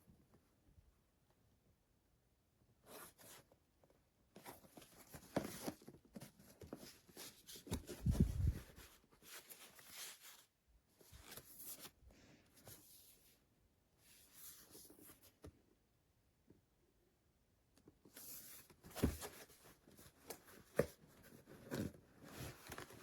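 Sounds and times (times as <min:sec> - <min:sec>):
rustling and scraping: 0:04.4 - 0:12.0.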